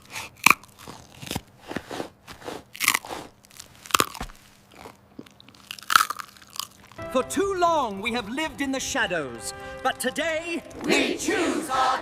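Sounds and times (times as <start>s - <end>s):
crisp crunches: 0.0s - 7.0s.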